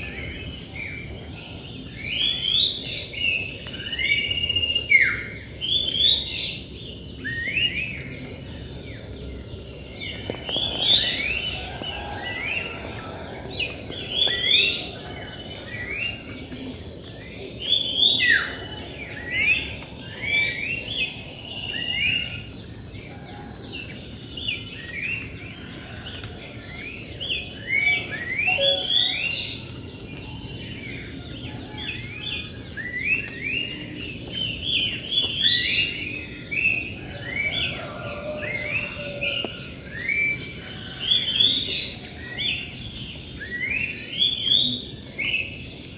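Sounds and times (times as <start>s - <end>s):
birds chirping and whistling: 27.6s - 29.6s
high-pitched insect drone: 27.6s - 45.6s.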